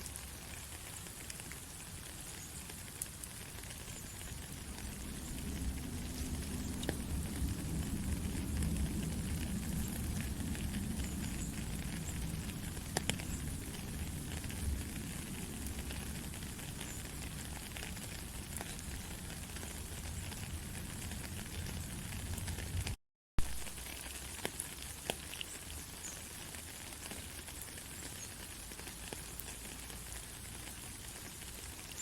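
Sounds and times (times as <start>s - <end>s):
rain patter: 0.0s - 32.0s
low rumble: 4.4s - 17.3s
single raindrop ticks: 12.9s - 13.5s.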